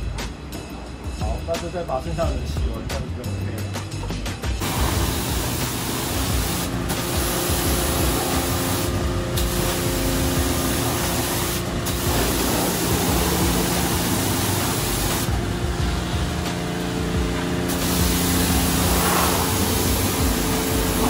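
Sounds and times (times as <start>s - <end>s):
low machine hum: 3.7s - 21.0s
high-pressure water spray hissing: 4.6s - 21.0s.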